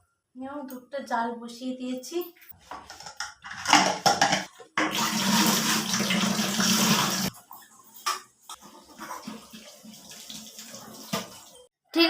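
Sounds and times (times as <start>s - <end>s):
tap water running: 2.7s - 11.7s.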